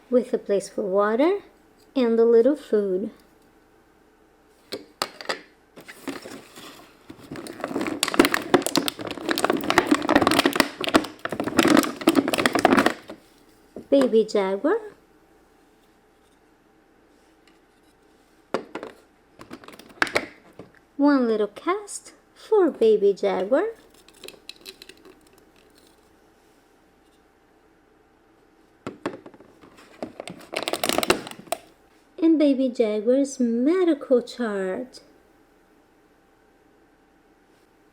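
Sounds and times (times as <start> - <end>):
plastic packaging crinkling: 5.8 - 13.6, 19.4 - 20.5, 23.8 - 26.1, 29.5 - 31.7.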